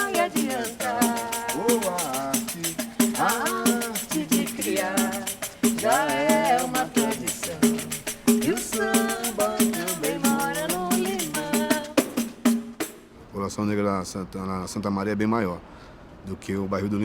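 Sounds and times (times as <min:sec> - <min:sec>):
person singing: 0:00.0 - 0:12.3
fast samba percussion: 0:00.0 - 0:13.2.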